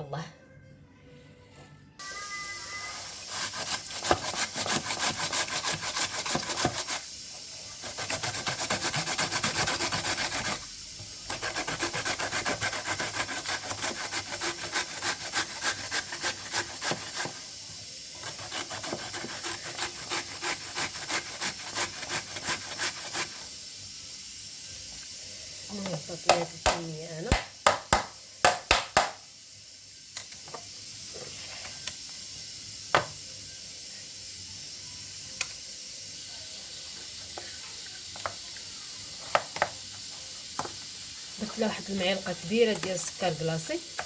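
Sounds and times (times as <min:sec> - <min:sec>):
turnip grated on a grater: 0:03.0 - 0:23.5.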